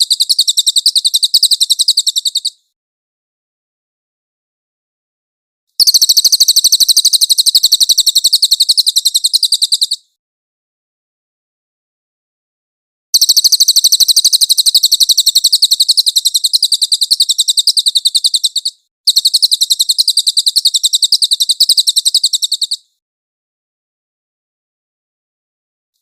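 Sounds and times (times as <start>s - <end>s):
fast high bird trill: 5.8s - 10.0s, 13.2s - 22.8s.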